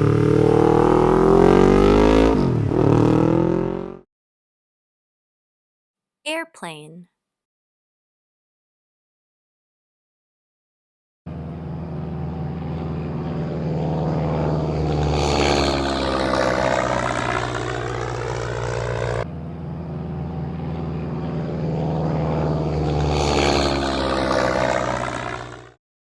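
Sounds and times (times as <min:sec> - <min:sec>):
airplane flying past: 0:11.3 - 0:25.8.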